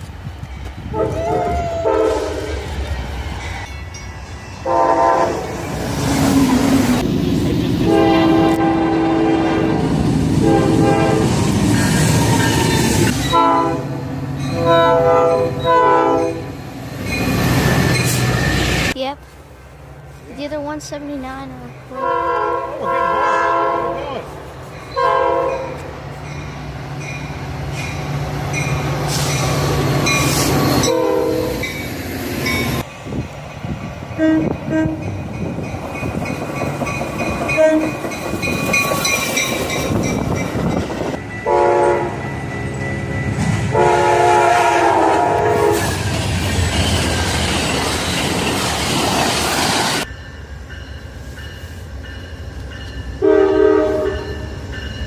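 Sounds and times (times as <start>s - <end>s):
train passing rumble: 0.0s - 55.0s
train horn blasts: 0.9s - 2.6s, 4.6s - 5.5s, 7.8s - 11.5s, 13.2s - 16.5s, 22.0s - 24.3s, 24.9s - 25.9s, 30.8s - 31.6s, 34.2s - 35.1s, 37.5s - 38.0s, 41.4s - 42.2s, 43.6s - 45.9s, 53.2s - 54.4s.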